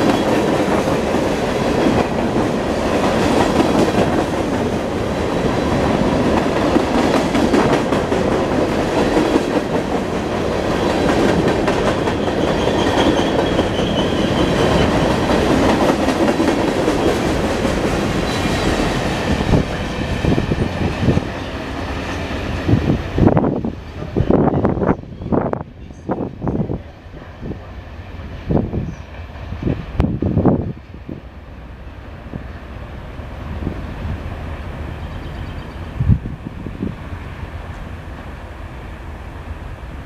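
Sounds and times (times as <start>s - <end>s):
train wheels rumbling on rail: 0.0s - 40.0s
faint high wheel squeal: 12.2s - 15.1s.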